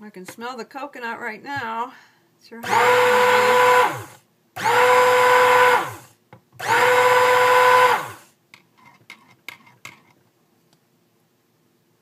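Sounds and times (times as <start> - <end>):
stick blender motor: 2.6 - 8.3.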